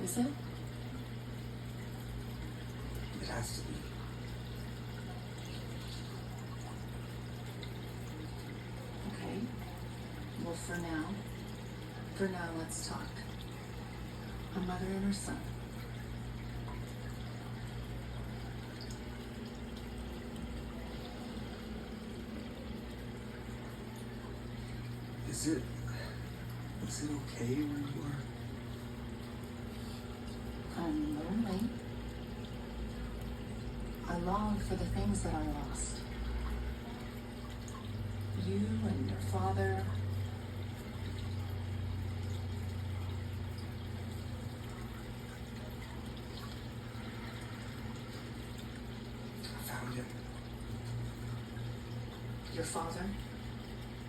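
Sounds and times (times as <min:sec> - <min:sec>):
pump hum: 0:00.0 - 0:54.0
water trickling: 0:00.0 - 0:54.0.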